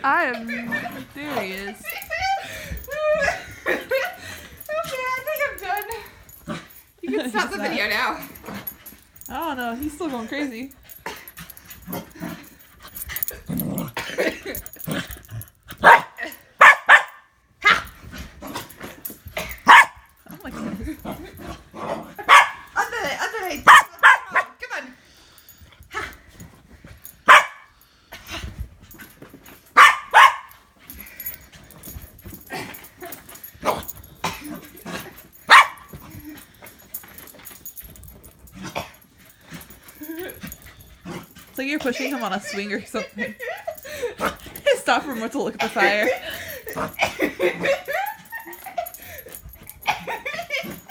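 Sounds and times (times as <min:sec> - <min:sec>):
dog barking: 0:15.8 - 0:17.8, 0:19.6 - 0:20.0, 0:22.2 - 0:22.7, 0:23.7 - 0:24.6, 0:27.3 - 0:27.7, 0:29.8 - 0:30.5, 0:35.5 - 0:35.9.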